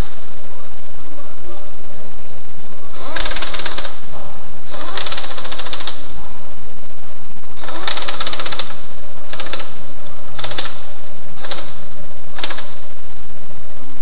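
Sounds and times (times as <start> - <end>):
pneumatic impact wrench rattling: 3.0 - 4.0, 4.7 - 6.1, 7.6 - 9.8, 10.4 - 12.9.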